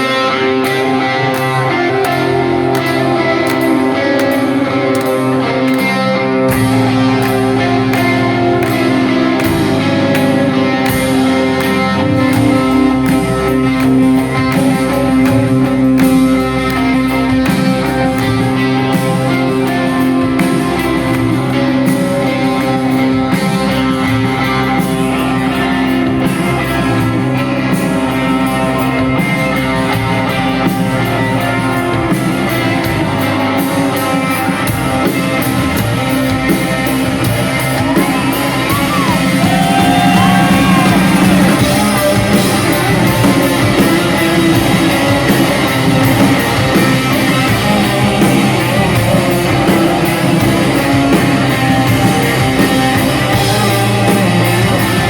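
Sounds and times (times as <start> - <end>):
electric guitars: 0.0 - 55.0.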